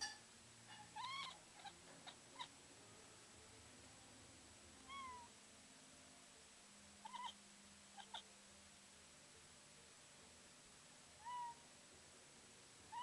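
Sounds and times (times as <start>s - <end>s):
cat chirping: 0.8s - 2.5s, 4.9s - 5.3s, 7.0s - 7.4s, 8.0s - 8.3s, 11.2s - 11.6s.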